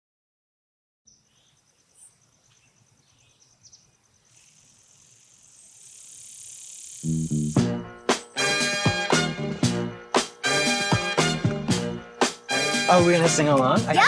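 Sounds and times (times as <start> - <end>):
bird chirps: 1.1 - 7.6
insect trilling: 1.2 - 8.4
high hiss: 4.2 - 8.3.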